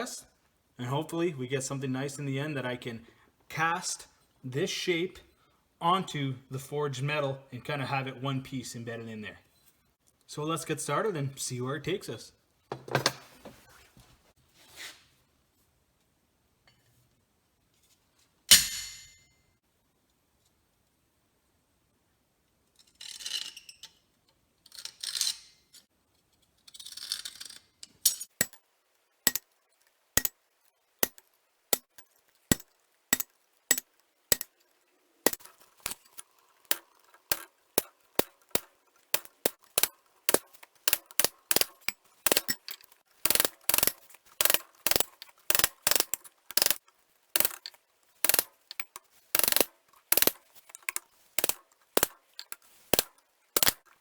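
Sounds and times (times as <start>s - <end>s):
hammer striking steel on anvil: 18.5s - 19.4s.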